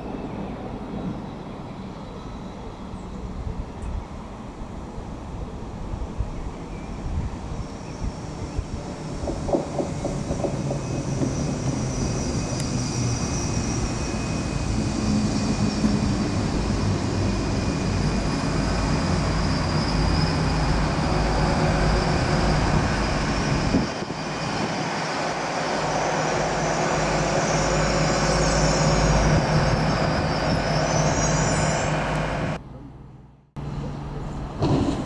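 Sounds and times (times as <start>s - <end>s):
wheels rumbling on rail: 0.0s - 35.0s
train engine low note: 7.0s - 35.0s.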